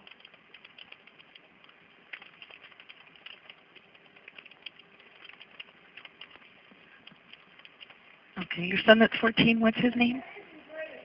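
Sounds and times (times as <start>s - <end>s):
keyboard typing clicks: 0.0s - 8.0s.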